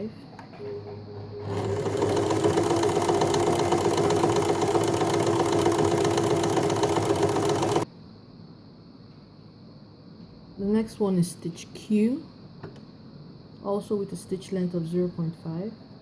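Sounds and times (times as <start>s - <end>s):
sewing machine stitching: 1.4s - 7.8s.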